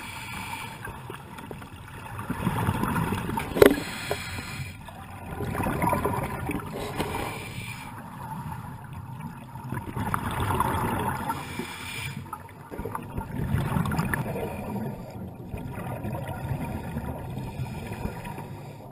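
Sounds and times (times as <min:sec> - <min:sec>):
underwater hiss: 0:00.0 - 0:01.0, 0:03.5 - 0:04.8, 0:06.7 - 0:08.5, 0:11.1 - 0:12.4, 0:16.6 - 0:18.9
bubbles gurgling underwater: 0:00.9 - 0:07.4, 0:08.0 - 0:11.6, 0:12.4 - 0:18.9.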